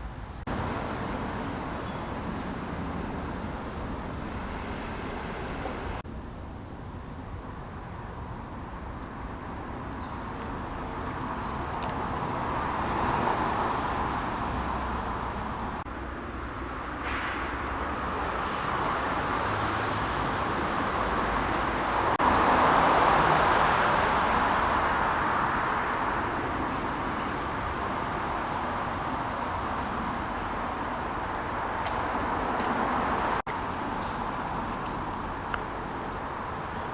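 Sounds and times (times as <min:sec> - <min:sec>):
road traffic passing: 0:00.0 - 0:36.9.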